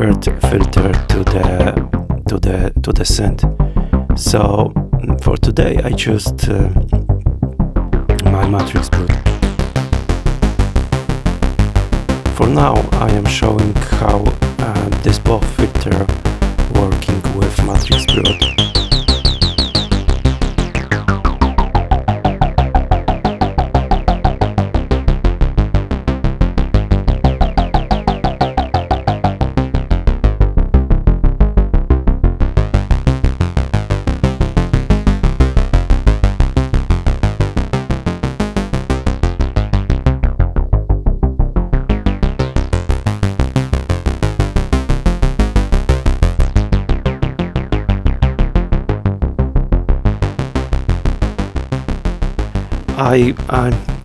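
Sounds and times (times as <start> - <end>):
synthesizer bass sequence: 0.0 - 50.5, 52.4 - 54.0.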